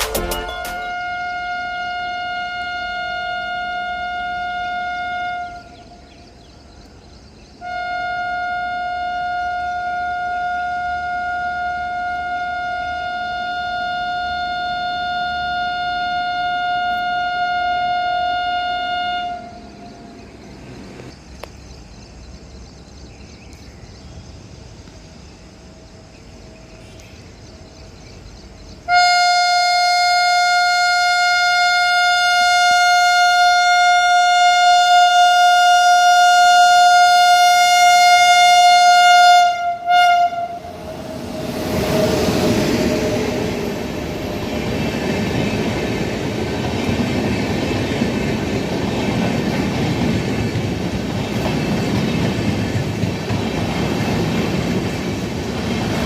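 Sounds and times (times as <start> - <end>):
locomotive horn blasts: 0.0 - 6.1, 7.6 - 19.9, 28.9 - 44.1.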